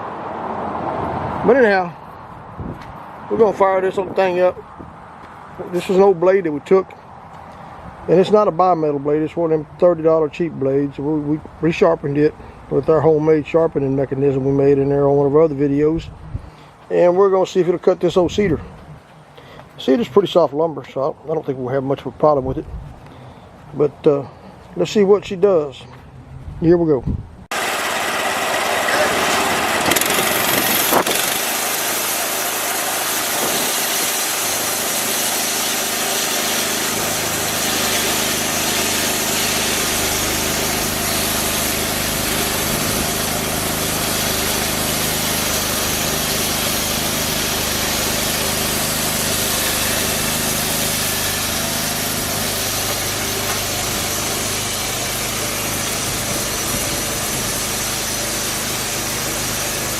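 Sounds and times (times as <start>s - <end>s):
saw blade cutting log: 27.5s - 59.9s
sawmill engine running: 27.5s - 59.9s.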